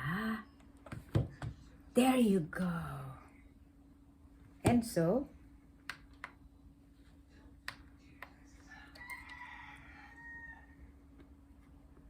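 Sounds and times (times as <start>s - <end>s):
distant rooster crowing: 8.6s - 11.0s.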